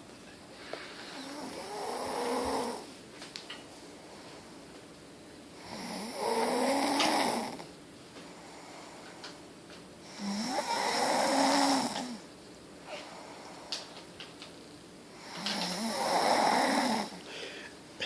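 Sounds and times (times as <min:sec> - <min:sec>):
long snores: 0:01.1 - 0:02.9, 0:05.6 - 0:07.7, 0:10.1 - 0:12.2, 0:15.2 - 0:17.2.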